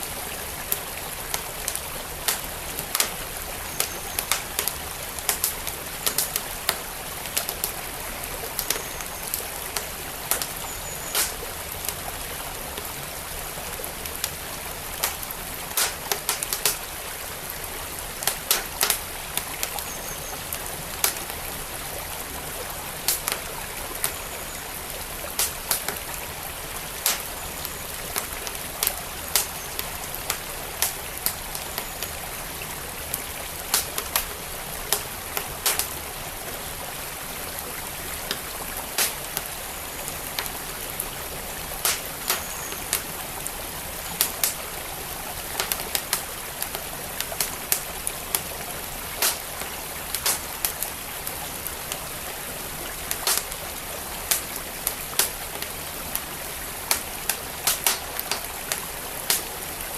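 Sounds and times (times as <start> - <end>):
flowing creek: 0.0 - 59.9
wood fire crackling and popping: 0.0 - 59.9.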